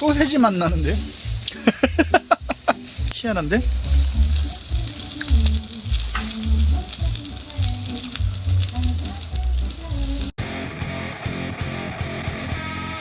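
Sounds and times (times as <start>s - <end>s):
food sizzling with spatter: 0.0s - 10.4s
background music with beat: 0.0s - 13.0s.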